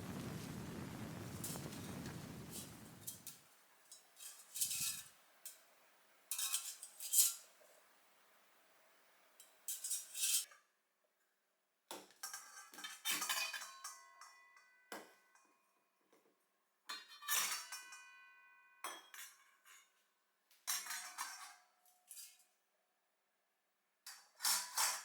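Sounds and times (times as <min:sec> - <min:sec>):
utensils and tableware clinking: 0:06.3 - 0:07.5.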